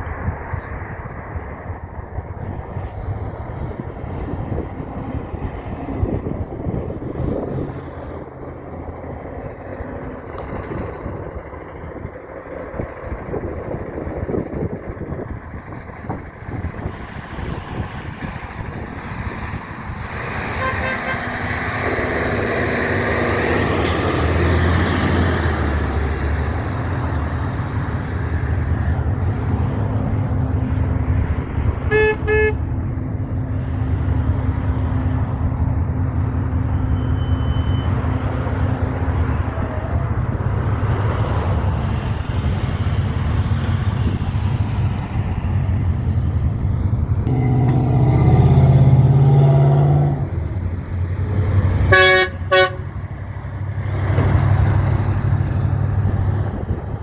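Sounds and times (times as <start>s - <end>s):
heavy trucks passing: 0.0s - 57.0s
vehicle horn toots: 20.4s - 21.6s, 31.8s - 32.7s, 47.3s - 48.5s, 51.9s - 53.0s.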